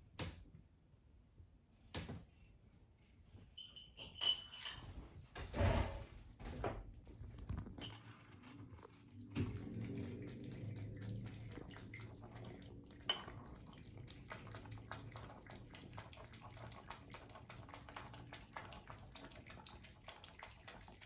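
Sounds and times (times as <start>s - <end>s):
bath water splashing and dripping: 8.8s - 21.0s.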